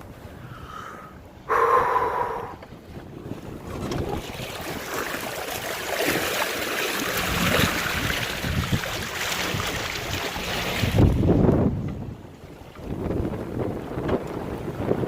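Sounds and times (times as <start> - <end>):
wind buffeting microphone: 0.0 - 15.0
rushing water: 1.5 - 11.7.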